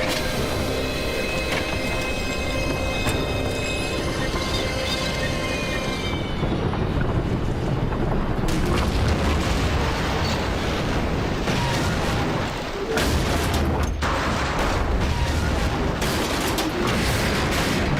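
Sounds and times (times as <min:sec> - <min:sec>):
low rumbling din: 0:00.0 - 0:17.9
sharp crashes: 0:08.3 - 0:17.9.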